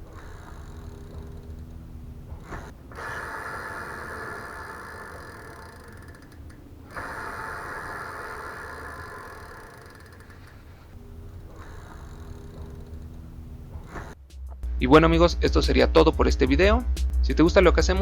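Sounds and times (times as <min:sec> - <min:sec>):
bicycle freehub ratcheting: 0:00.0 - 0:14.2.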